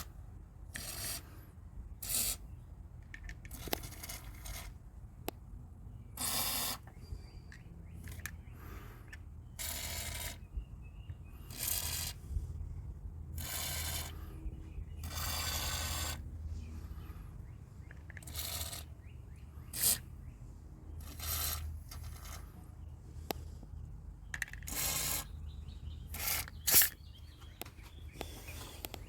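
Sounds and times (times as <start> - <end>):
tools scraping metal: 13.4 - 14.2.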